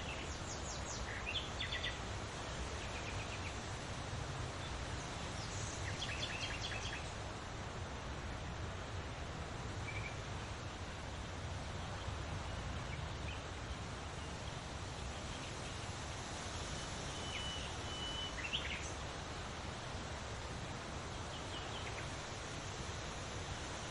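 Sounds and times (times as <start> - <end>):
wind rustling leaves: 0.0 - 23.9
bird chirps: 17.1 - 18.9.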